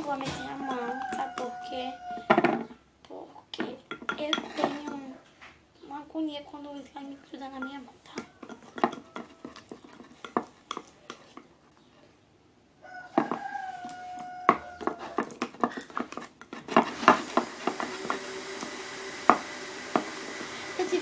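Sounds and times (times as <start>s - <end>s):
slime stirred in a bowl: 3.6s - 5.1s, 6.8s - 11.6s, 13.1s - 18.8s.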